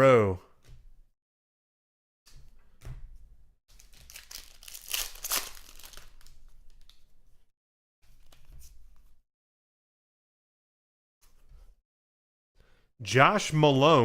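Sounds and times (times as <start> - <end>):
foil wrapper crinkling and tearing: 3.7 - 7.0
cards being handled: 3.7 - 7.2.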